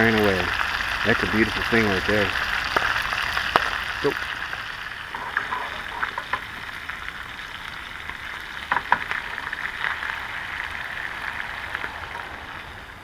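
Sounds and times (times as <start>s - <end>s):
crackling pops: 0.0s - 12.4s
fish frying in grease: 0.0s - 13.0s.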